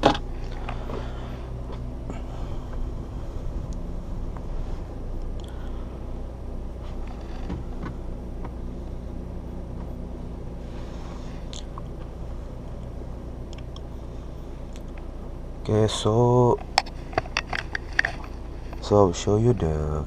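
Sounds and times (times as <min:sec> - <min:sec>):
car engine idling: 0:00.0 - 0:20.0
clicks and rustles of handling: 0:16.6 - 0:18.9.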